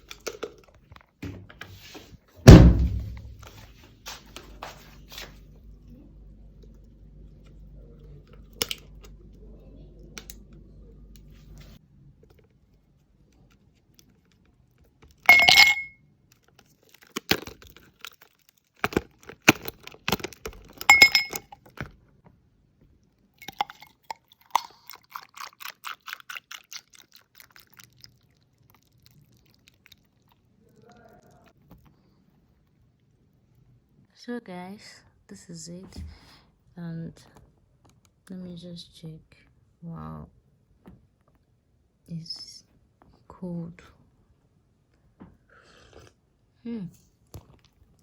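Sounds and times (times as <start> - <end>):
plastic ice cubes clinking: 15.0 - 15.9, 16.9 - 21.9, 23.4 - 25.0.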